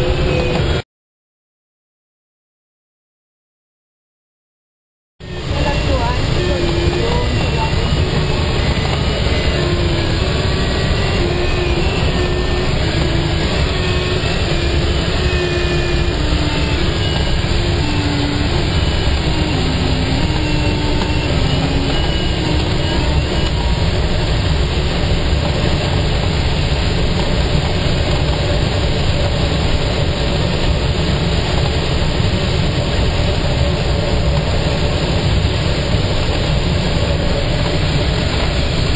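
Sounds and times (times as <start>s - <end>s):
faint tone changing pitch: 5.2s - 24.3s
airflow rushing over glider: 5.2s - 38.9s.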